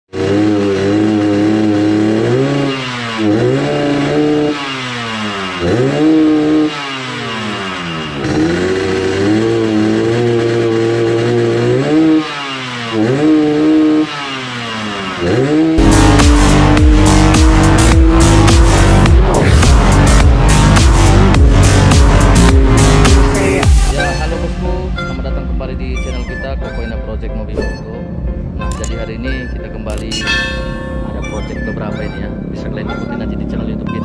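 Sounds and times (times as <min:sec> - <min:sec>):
two-stroke motorcycle engine revving: 0:00.1 - 0:24.8.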